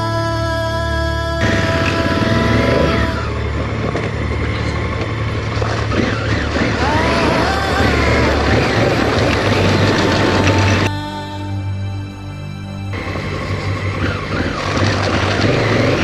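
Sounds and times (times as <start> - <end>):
motorcycle engine running: 1.4 - 10.9, 12.9 - 16.0
wind and road noise: 1.4 - 10.9, 13.0 - 16.0.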